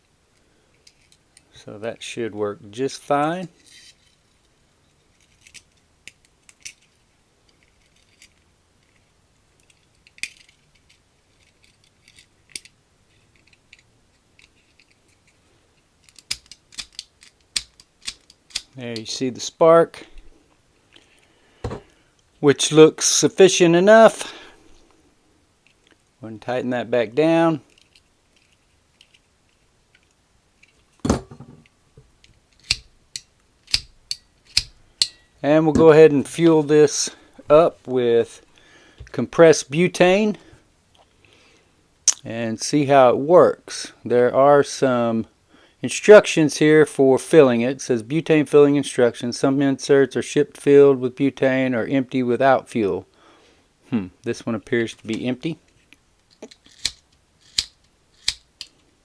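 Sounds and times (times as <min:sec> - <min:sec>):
lighter flint wheel clicking: 0:32.6 - 0:35.2, 0:56.7 - 0:58.7.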